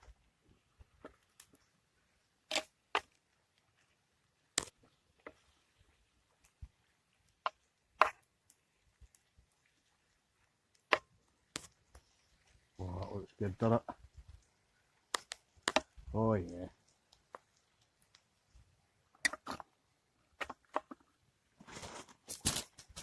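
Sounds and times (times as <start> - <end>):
sharp clicks and cracks: 2.5 - 3.2, 4.5 - 5.4, 10.7 - 12.1, 15.1 - 18.3.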